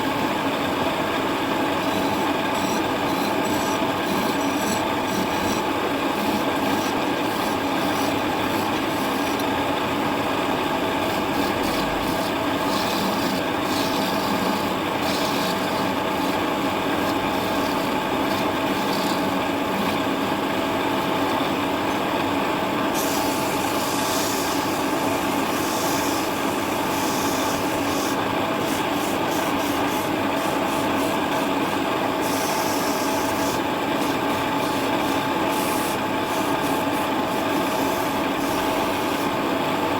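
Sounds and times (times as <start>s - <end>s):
wood lathe motor hum: 0.1s - 39.9s
turning tool cutting wood: 1.6s - 22.2s, 22.9s - 39.4s.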